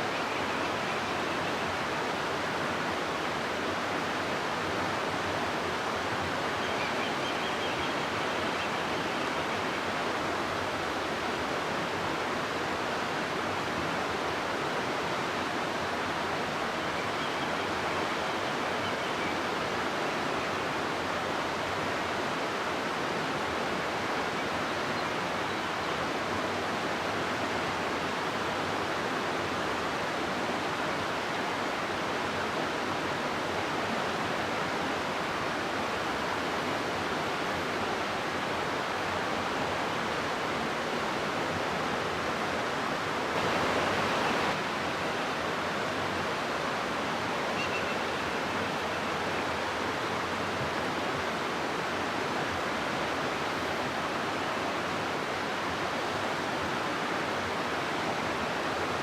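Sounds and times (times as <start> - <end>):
river water rushing over rocks: 19.4 - 59.0.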